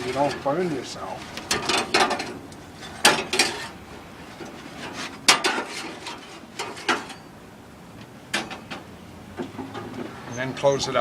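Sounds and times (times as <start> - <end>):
metal clinks and scrapes on grill: 0.0 - 7.3.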